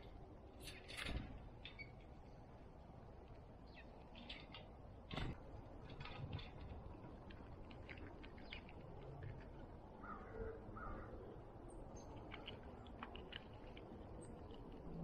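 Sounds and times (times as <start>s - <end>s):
crow cawing: 10.0s - 11.2s.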